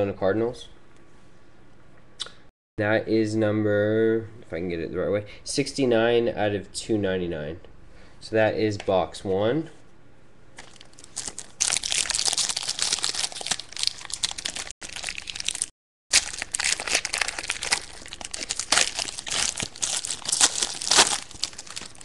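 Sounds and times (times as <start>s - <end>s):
plastic wrap crinkling and tearing: 10.6s - 22.0s.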